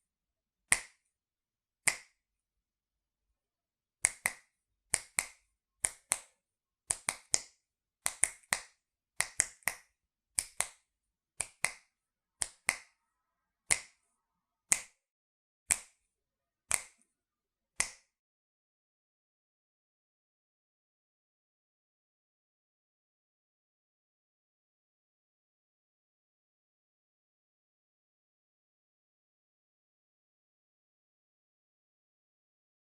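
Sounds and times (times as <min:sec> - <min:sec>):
finger snaps: 0:00.7 - 0:01.1, 0:01.8 - 0:02.2, 0:04.0 - 0:13.0, 0:13.7 - 0:14.0, 0:14.7 - 0:15.1, 0:15.7 - 0:16.1, 0:16.7 - 0:17.1, 0:17.8 - 0:18.1.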